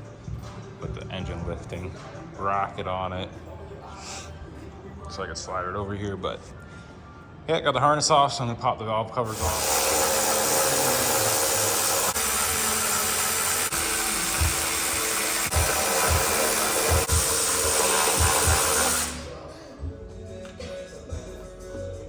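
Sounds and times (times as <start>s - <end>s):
shop tool whirring: 9.3s - 19.5s.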